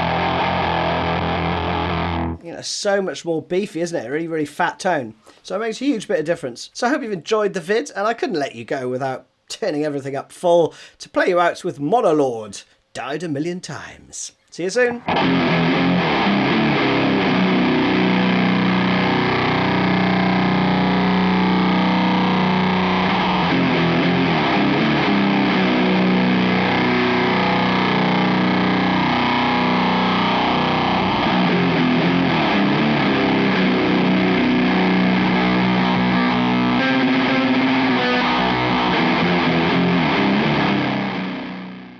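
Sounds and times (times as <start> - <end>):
distorted electric guitar riff: 0.0 - 2.4, 15.0 - 41.9.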